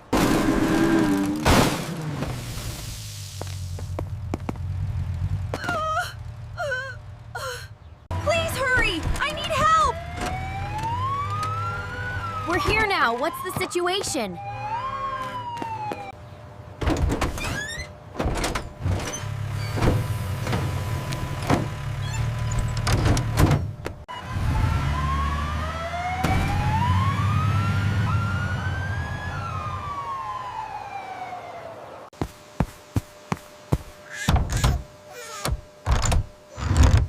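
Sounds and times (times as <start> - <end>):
vehicle engine rumble: 0.0 - 13.3, 15.6 - 30.8
siren wail: 9.2 - 16.2, 24.1 - 32.1.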